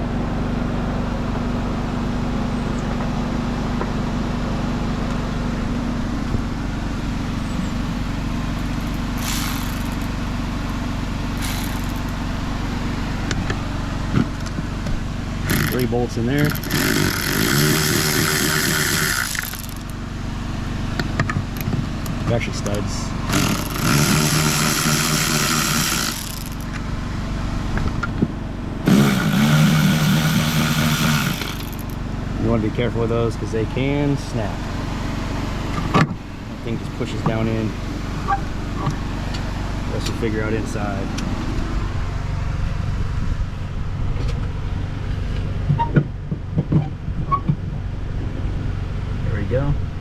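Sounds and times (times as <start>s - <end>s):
low hum: 3.8s - 45.5s
impact wrench whining and rattling: 7.2s - 20.2s, 21.0s - 27.0s, 27.7s - 32.0s.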